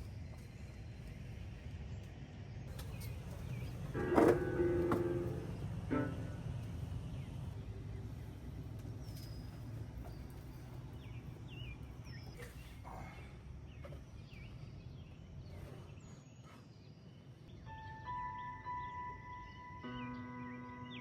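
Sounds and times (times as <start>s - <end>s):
low outdoor rumble: 0.0s - 16.4s
held musical tone: 3.8s - 7.2s, 17.6s - 21.0s
small birds chirping: 5.1s - 21.0s.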